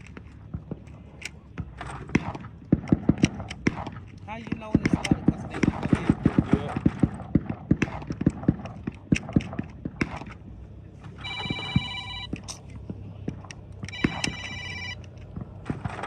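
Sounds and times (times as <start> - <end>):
phone ringtone ringing: 11.2 - 12.4, 13.9 - 15.2
sharp clicks: 13.4 - 16.0.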